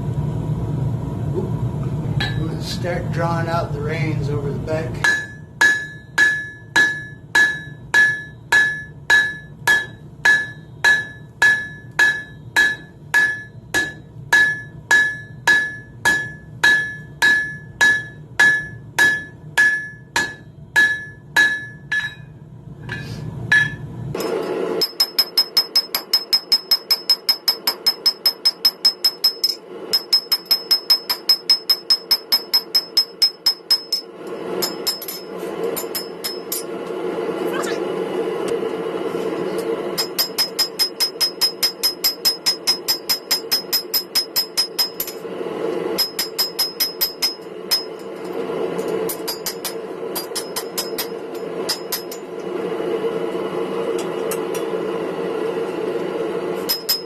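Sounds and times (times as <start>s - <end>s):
low steady hum: 0.0s - 57.0s
hammer ringing on anvil: 2.2s - 2.5s, 5.0s - 36.7s, 40.0s - 45.2s, 46.0s - 48.2s, 48.8s - 52.3s, 56.7s - 57.0s.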